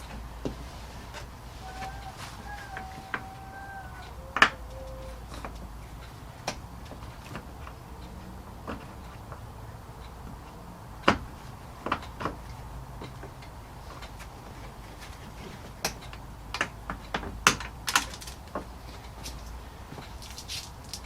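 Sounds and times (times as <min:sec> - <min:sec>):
plastic car parts clicking: 0:15.8 - 0:18.7.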